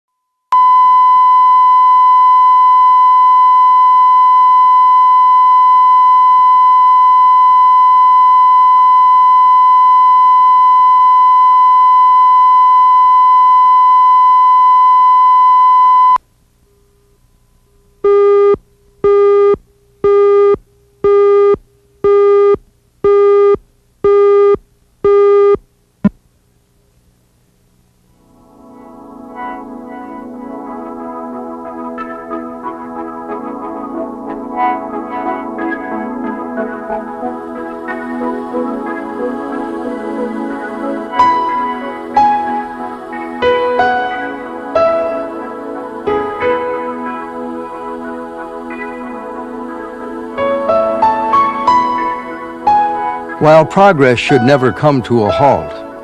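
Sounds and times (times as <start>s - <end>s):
short low-pitched beeps: 0.5s - 16.2s, 18.0s - 26.2s.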